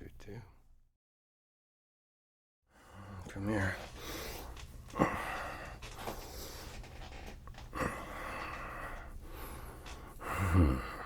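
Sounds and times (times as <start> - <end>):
man breathing softly: 2.7 - 11.0.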